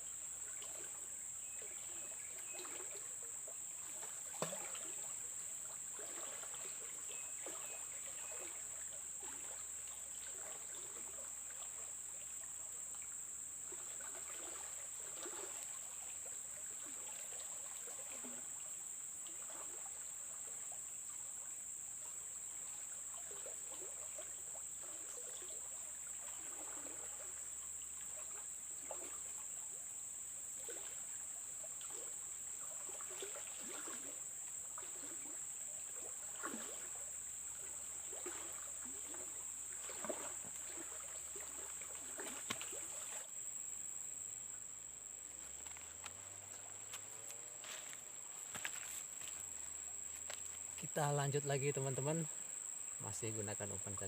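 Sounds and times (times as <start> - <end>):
river water gurgling: 0.0 - 54.0
high-pitched insect drone: 31.9 - 54.0.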